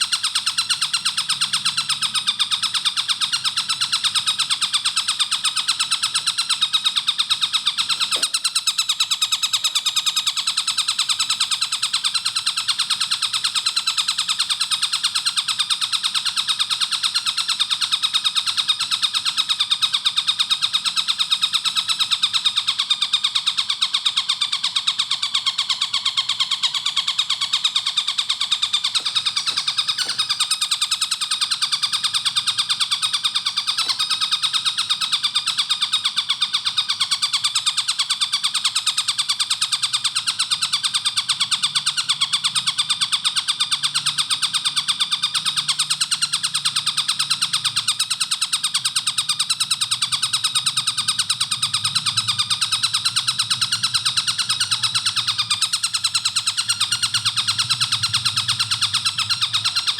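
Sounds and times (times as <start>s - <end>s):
kingfisher rapid repeated calls: 3.2s - 10.6s, 26.4s - 36.2s, 51.4s - 59.9s.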